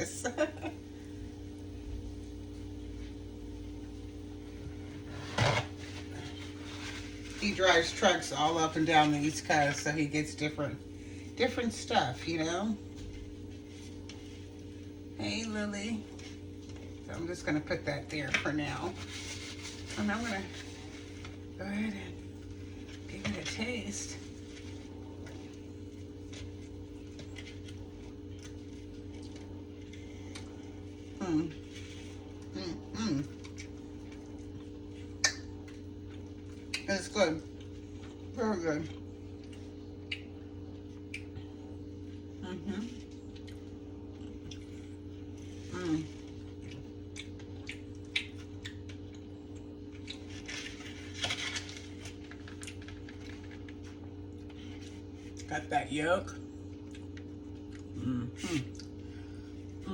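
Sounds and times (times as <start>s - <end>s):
low electrical hum: 0.0s - 59.9s
chewing: 24.4s - 32.6s, 33.2s - 36.9s, 37.5s - 41.7s, 42.9s - 55.5s, 56.7s - 59.0s.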